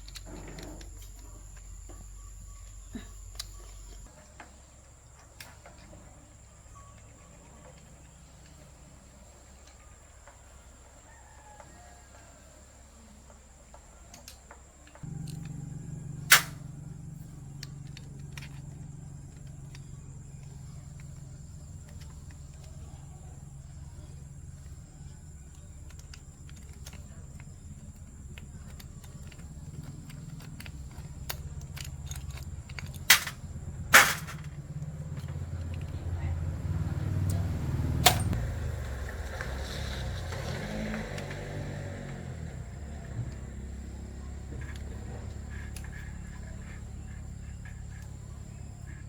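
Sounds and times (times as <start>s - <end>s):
low electric hum: 15.0s - 39.0s.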